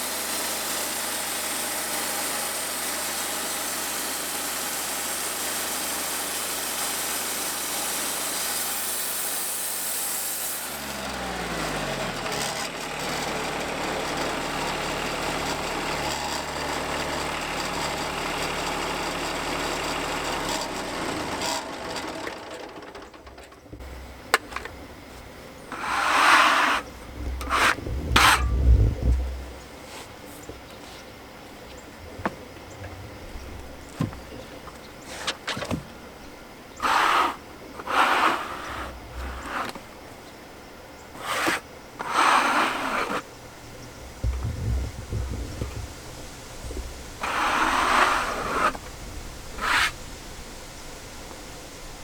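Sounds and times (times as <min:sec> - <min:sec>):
band saw cutting log: 0:00.0 - 0:35.5, 0:36.8 - 0:40.1, 0:41.1 - 0:50.5
engine slowing: 0:10.7 - 0:26.2, 0:26.8 - 0:35.0, 0:43.1 - 0:52.0
scraping knocks: 0:21.3 - 0:36.0, 0:42.7 - 0:50.1.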